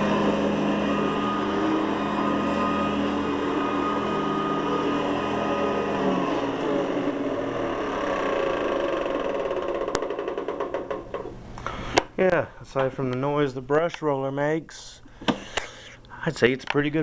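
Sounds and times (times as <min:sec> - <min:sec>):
upright vacuum motor winding down: 0:00.0 - 0:11.3.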